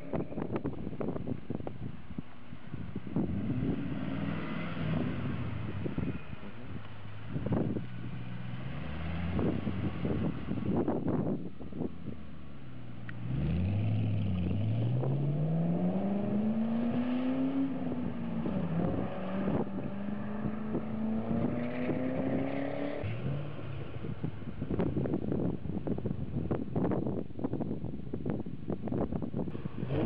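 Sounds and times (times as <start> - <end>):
car engine accelerating: 3.2 - 12.2, 12.8 - 24.9.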